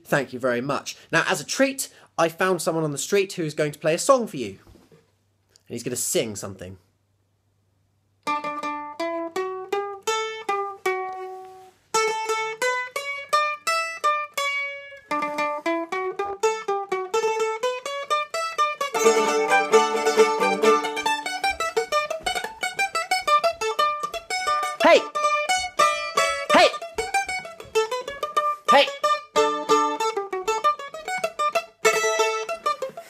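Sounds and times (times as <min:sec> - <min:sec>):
plucked string instrument tune: 0:08.2 - 0:33.0.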